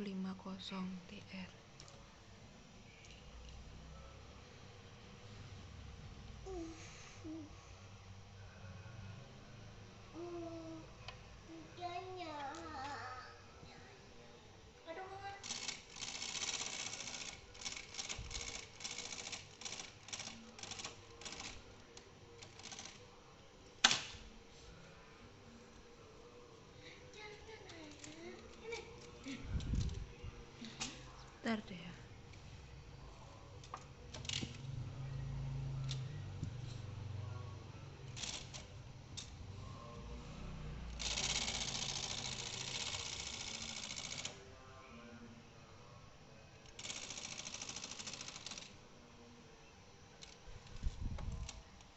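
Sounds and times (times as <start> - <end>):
typewriter mechanism clattering: 15.4 - 21.6
typewriter ratcheting: 15.4 - 21.6, 22.4 - 23.0, 38.2 - 39.3, 41.0 - 44.4, 46.8 - 48.7.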